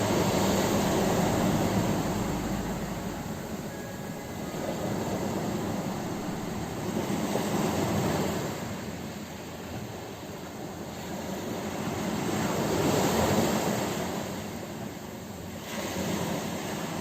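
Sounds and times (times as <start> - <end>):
ocean waves breaking on shore: 0.0 - 8.2.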